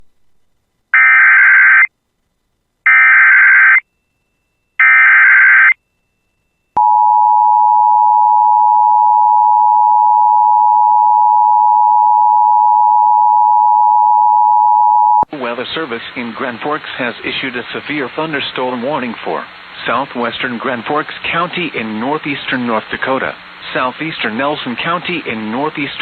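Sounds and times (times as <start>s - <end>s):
steady attention tone: 2.9s - 15.3s.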